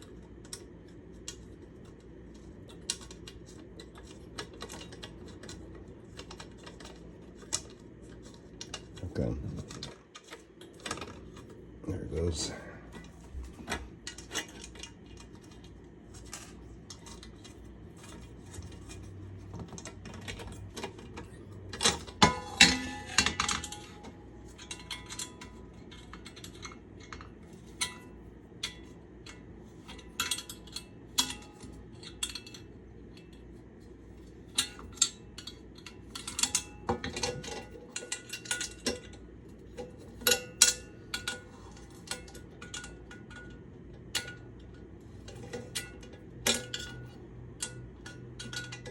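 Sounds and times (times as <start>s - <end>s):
tools clinking on metal pan: 21.8s - 27.2s.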